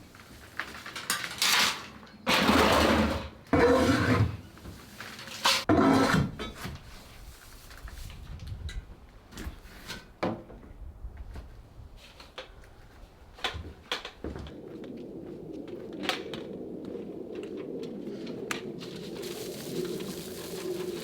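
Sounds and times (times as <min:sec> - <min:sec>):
straw rustling and scraping: 0:03.6 - 0:06.1, 0:18.8 - 0:21.0.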